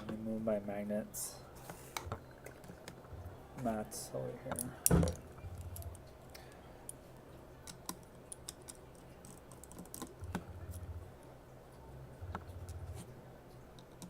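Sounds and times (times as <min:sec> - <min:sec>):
small tools clicking and tapping: 0:07.6 - 0:10.5.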